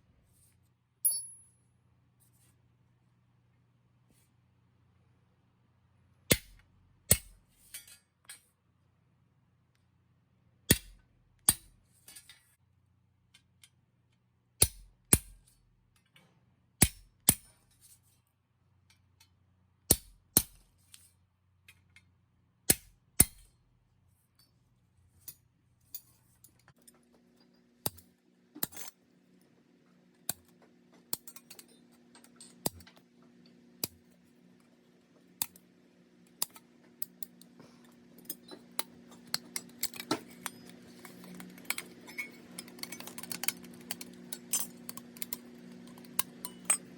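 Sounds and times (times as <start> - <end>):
steady low hum: 26.8 - 46.9.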